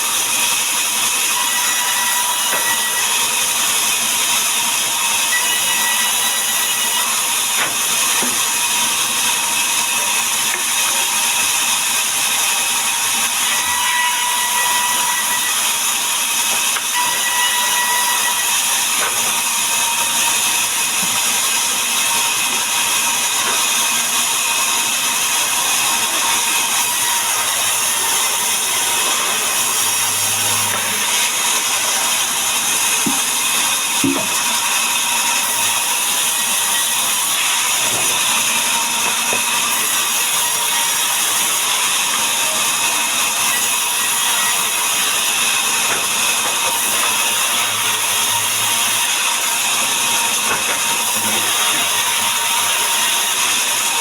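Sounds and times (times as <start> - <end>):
power saw cutting wood: 0.0 - 54.0.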